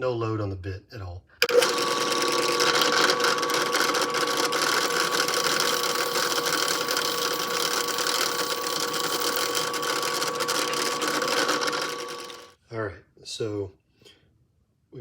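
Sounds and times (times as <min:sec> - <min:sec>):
drill press whining: 0:01.4 - 0:12.5.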